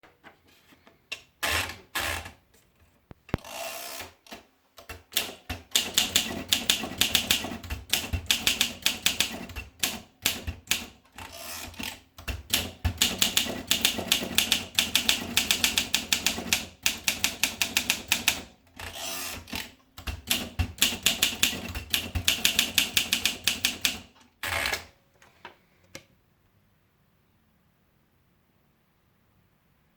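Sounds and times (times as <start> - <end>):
typewriter keystroke clacks: 4.8 - 11.0, 11.7 - 18.5, 19.4 - 24.9.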